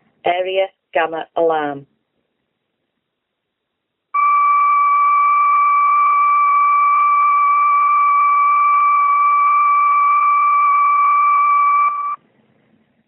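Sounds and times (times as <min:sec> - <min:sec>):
steady high alarm tone: 0:04.2 - 0:12.2.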